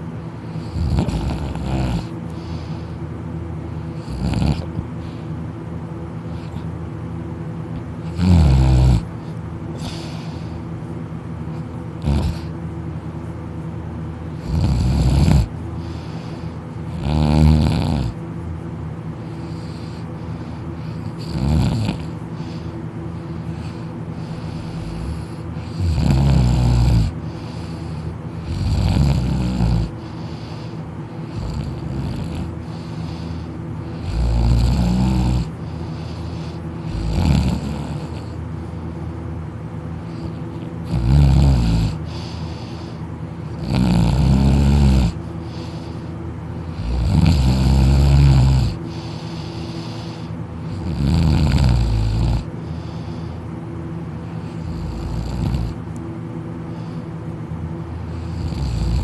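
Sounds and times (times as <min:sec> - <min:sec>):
person snoring loudly: 0:00.6 - 0:02.2, 0:04.0 - 0:04.8, 0:08.0 - 0:09.1, 0:12.0 - 0:12.5, 0:14.3 - 0:16.0, 0:16.9 - 0:18.2, 0:21.1 - 0:22.2, 0:23.6 - 0:30.0, 0:31.3 - 0:38.4, 0:40.2 - 0:45.8, 0:46.7 - 0:53.1, 0:54.4 - 0:55.8, 0:58.1 - 0:59.0.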